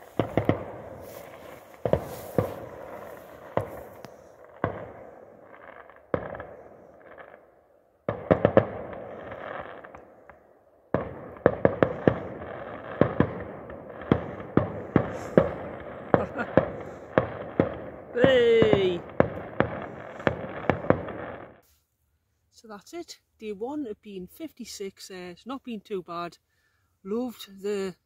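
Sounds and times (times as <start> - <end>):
fireworks banging: 0.0 - 7.4, 8.1 - 21.6.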